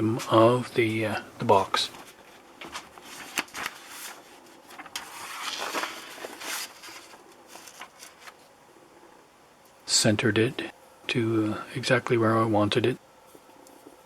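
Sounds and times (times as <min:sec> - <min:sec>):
paper rustling in plastic box: 0:01.7 - 0:08.5.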